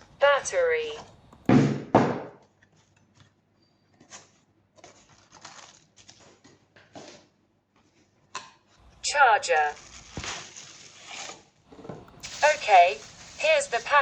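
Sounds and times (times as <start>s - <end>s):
packaging rustling: 4.0s - 7.2s, 8.8s - 14.0s.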